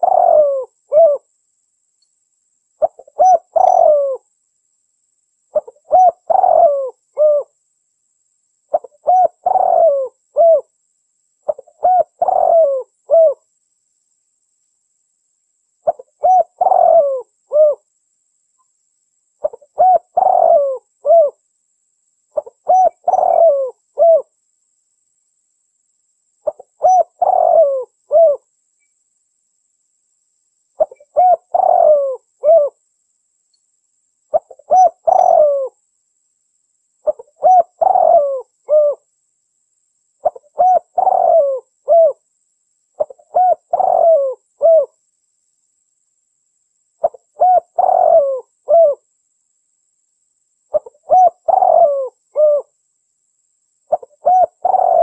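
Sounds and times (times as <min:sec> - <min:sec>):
dove cooing: 0:00.0 - 0:01.3, 0:02.8 - 0:04.2, 0:05.5 - 0:07.6, 0:08.7 - 0:10.7, 0:11.5 - 0:13.4, 0:15.8 - 0:17.8, 0:19.4 - 0:21.4, 0:22.4 - 0:24.3, 0:26.4 - 0:28.5, 0:30.8 - 0:32.8, 0:34.3 - 0:35.8, 0:37.0 - 0:39.1, 0:40.2 - 0:42.2, 0:43.0 - 0:45.0, 0:47.0 - 0:49.0, 0:50.7 - 0:52.7, 0:53.9 - 0:55.0.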